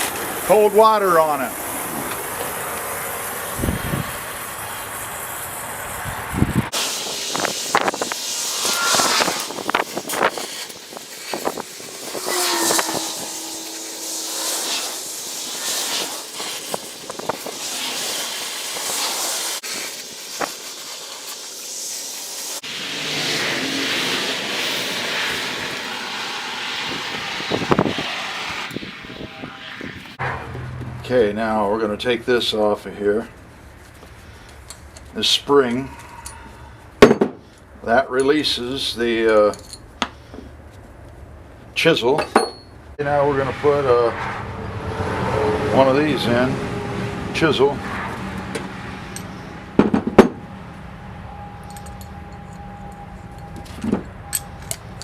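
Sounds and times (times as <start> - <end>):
torch or steam hissing: 6.5 - 30.1
steel clinking: 39.5 - 40.0, 42.2 - 42.8, 51.3 - 55.0.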